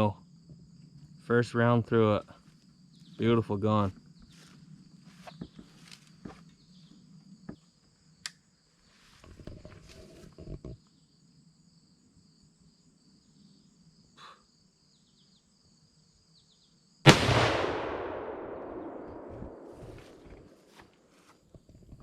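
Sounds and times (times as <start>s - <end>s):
crickets chirping: 0.0s - 22.0s
rifle shot with echo: 17.1s - 20.7s.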